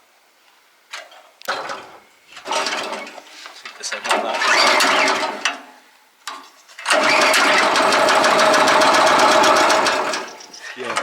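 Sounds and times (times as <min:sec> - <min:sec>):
wood chipper engine starting: 0:01.5 - 0:03.2, 0:04.1 - 0:05.7, 0:06.8 - 0:10.6.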